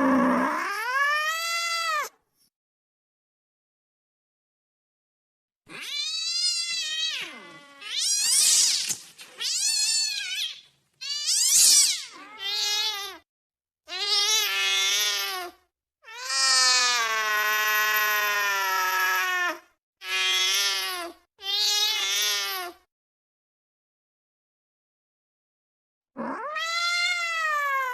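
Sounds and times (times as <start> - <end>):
angry cat yowling: 26.2 - 27.9.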